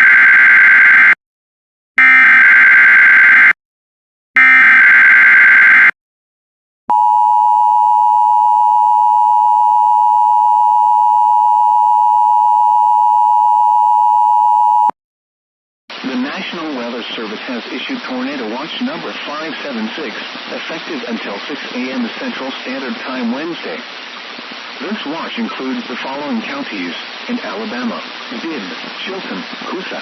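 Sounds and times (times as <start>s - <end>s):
steady two-tone attention signal: 6.9s - 14.9s.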